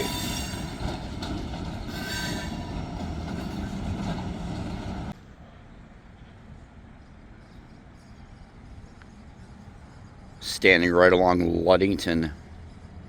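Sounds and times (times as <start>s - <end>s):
freight train cars rolling: 0.0s - 5.6s.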